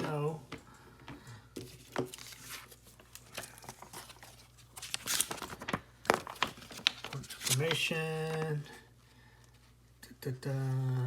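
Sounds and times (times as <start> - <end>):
paper rustling and crinkling: 1.5 - 8.8.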